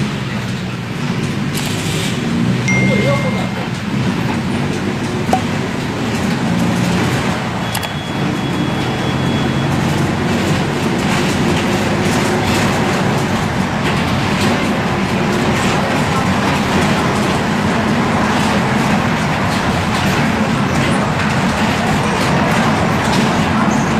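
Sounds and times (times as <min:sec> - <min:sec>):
thin high tone: 0:02.7 - 0:04.2.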